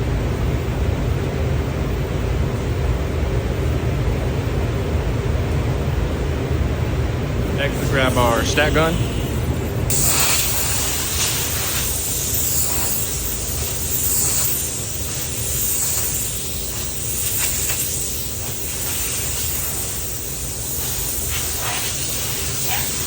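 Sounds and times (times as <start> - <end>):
ventilation rumble: 0.0 - 23.0
compressed air hissing: 7.6 - 23.0
air puffs: 7.7 - 23.0.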